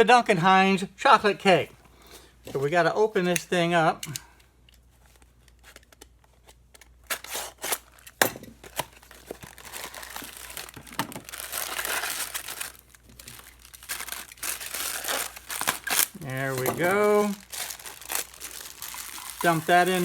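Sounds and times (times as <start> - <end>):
cardboard and bag tearing crinkling: 7.0 - 8.0, 8.7 - 20.0.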